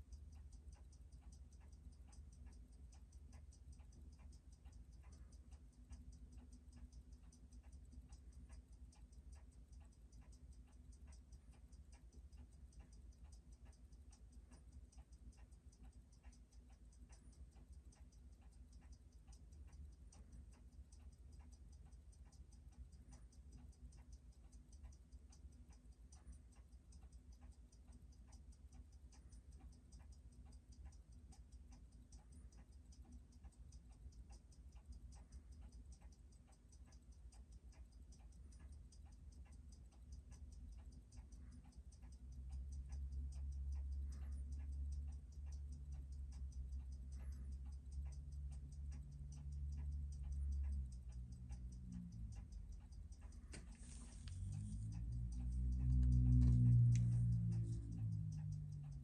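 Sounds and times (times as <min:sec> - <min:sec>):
watch movement ticking: 0:00.0 - 0:59.0
low hum: 0:38.1 - 0:59.0.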